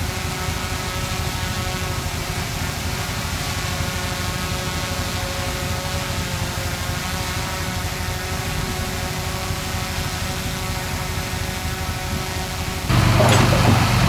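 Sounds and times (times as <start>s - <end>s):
heavy diesel engine running: 12.9s - 14.0s.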